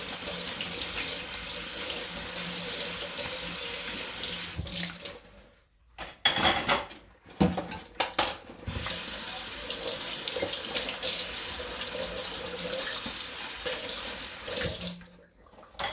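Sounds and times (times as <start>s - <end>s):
tap running into sink: 8.6s - 9.3s, 12.8s - 14.9s.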